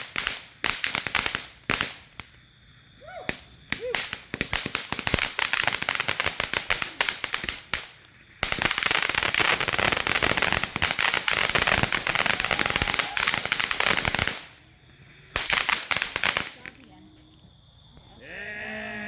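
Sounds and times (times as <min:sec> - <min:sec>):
firecrackers popping: 0:00.0 - 0:18.1.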